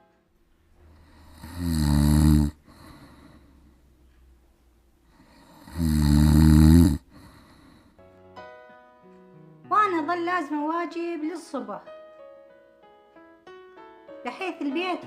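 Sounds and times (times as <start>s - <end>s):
quiet breath: 0.8s - 8.0s
man snoring heavily: 0.9s - 3.6s, 5.1s - 7.9s.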